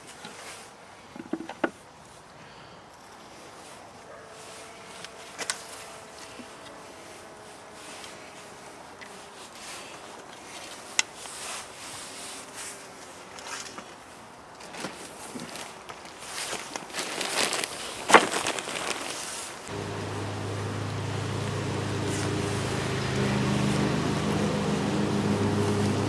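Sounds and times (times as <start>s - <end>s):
honeybees buzzing: 4.3s - 9.4s, 19.7s - 26.0s.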